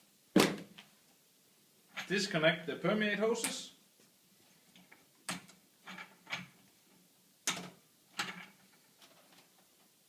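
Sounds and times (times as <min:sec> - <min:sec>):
hose fittings clicking and knocking: 0:04.7 - 0:06.6, 0:07.4 - 0:09.6.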